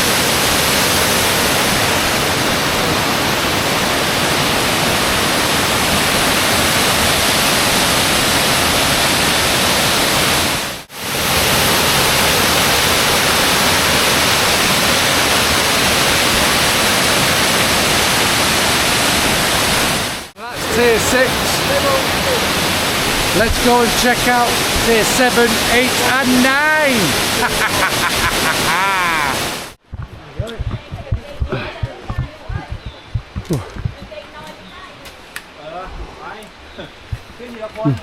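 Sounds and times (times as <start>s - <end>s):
waterfall roaring: 0.0s - 29.8s.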